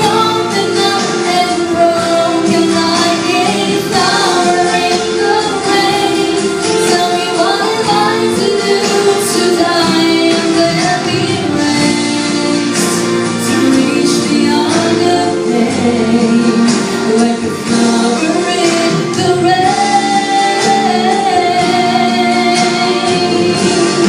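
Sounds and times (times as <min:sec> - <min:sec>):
instrumental accompaniment: 0:00.0 - 0:24.0
woman singing: 0:00.0 - 0:24.0.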